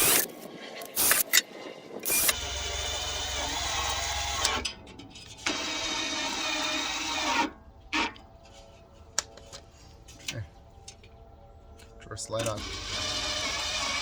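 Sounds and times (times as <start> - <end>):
cordless drill driving screws: 0.0 - 0.3, 0.9 - 1.4, 2.0 - 4.6, 12.6 - 14.0.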